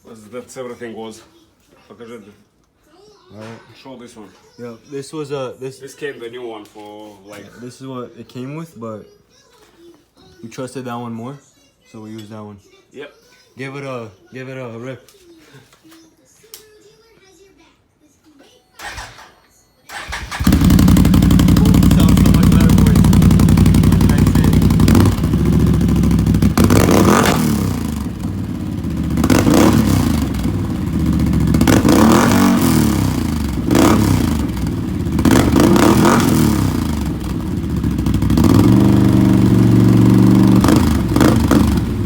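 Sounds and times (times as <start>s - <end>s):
atv engine revving: 19.9s - 42.0s.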